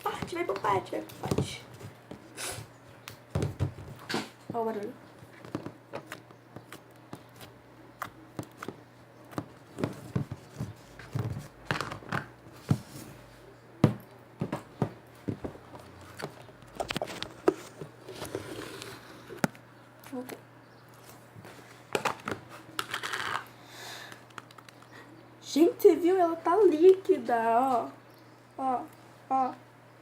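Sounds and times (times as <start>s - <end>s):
slime squishing with wet pops: 5.3s - 10.0s.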